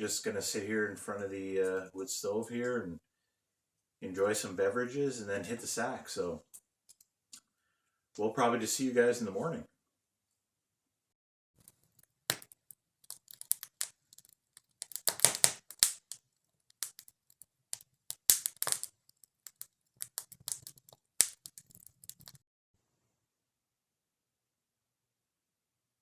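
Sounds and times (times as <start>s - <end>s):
wood fire crackling: 11.6s - 22.4s.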